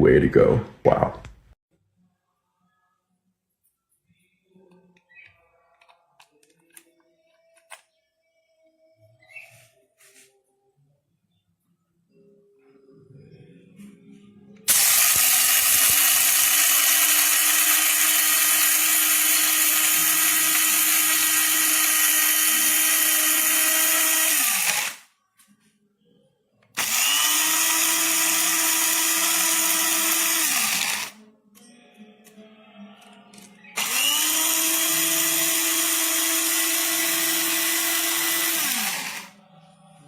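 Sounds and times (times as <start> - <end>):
coffee grinder motor running: 14.7 - 25.0, 26.8 - 31.2, 33.8 - 39.4.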